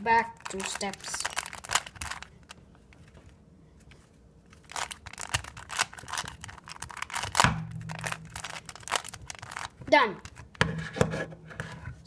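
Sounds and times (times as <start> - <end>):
plastic cube clicking and rattling: 0.4 - 2.3, 4.7 - 10.6.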